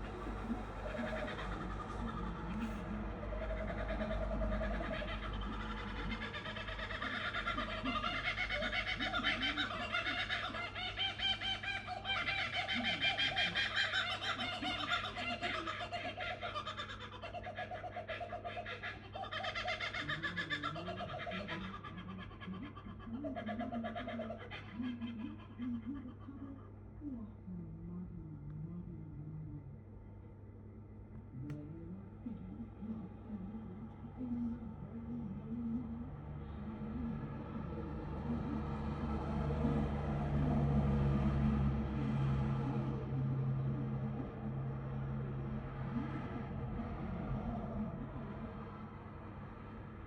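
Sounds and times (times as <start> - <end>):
kookaburras calling: 0.0 - 26.4.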